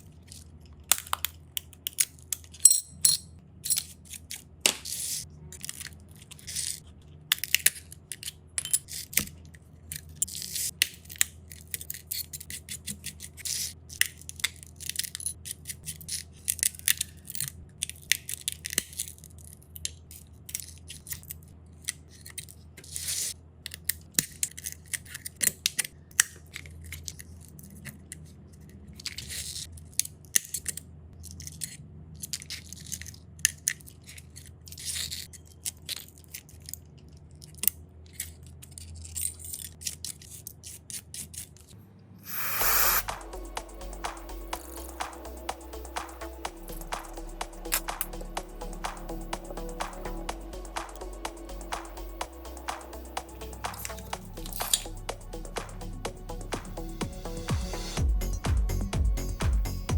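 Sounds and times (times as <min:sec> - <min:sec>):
steady low hum: 0:42.3 - 0:57.5.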